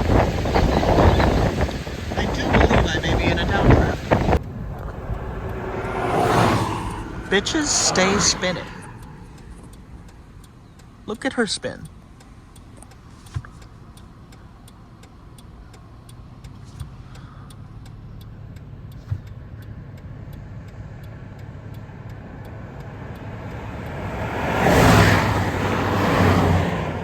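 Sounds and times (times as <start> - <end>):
faint regular ticking: 0.1 - 24.0
steady low rumble: 2.3 - 10.5
loud rushing noise: 2.7 - 9.7.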